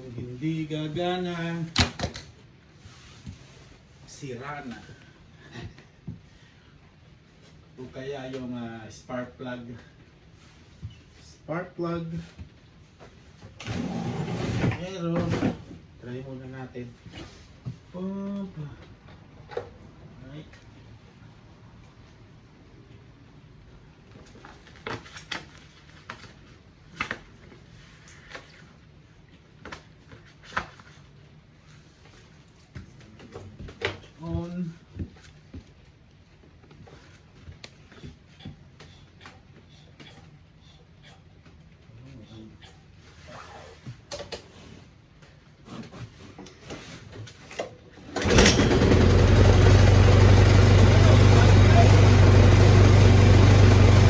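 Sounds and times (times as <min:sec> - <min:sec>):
small engine running: 0:48.2 - 0:54.0.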